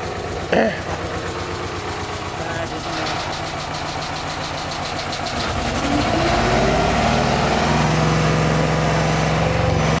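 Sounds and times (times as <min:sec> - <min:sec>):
engine revving up: 0:02.6 - 0:10.0.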